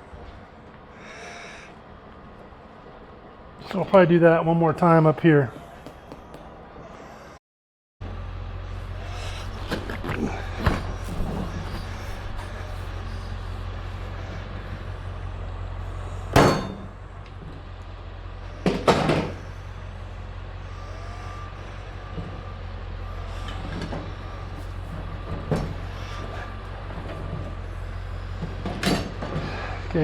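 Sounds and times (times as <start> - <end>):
steady low hum: 8.0 - 30.0.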